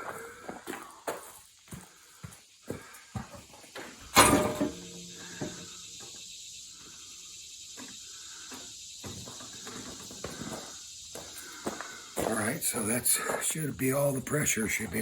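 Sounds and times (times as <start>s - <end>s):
loud ringing metallic clank: 4.2s - 5.7s.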